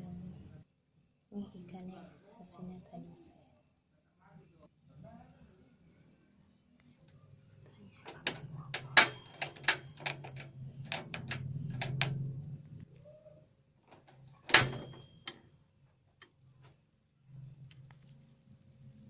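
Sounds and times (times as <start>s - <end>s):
low steady hum: 0.0s - 19.0s
utensils and dishes clinking: 8.0s - 12.2s.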